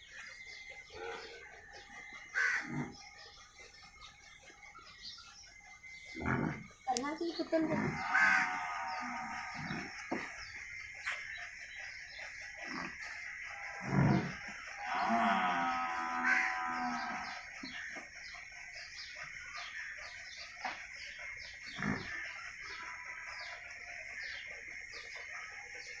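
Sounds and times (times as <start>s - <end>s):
high-pitched pulsing background: 0.0s - 26.0s
cow mooing: 6.2s - 6.8s, 7.6s - 10.2s, 12.6s - 17.6s, 21.7s - 23.5s.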